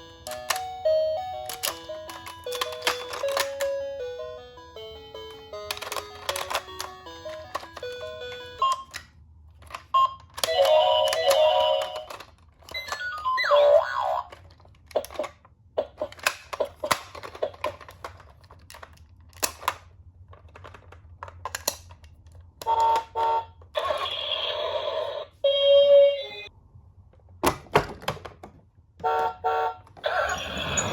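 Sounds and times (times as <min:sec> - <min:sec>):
plastic toy clicks and taps: 0:05.6 - 0:07.8
toy electronic beeping tones: 0:06.2 - 0:09.0, 0:12.7 - 0:14.2.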